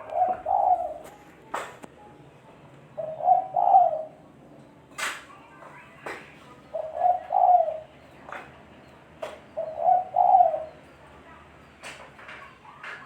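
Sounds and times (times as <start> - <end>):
dove cooing: 0.0 - 1.4, 2.9 - 4.4, 6.6 - 8.5, 9.3 - 10.9.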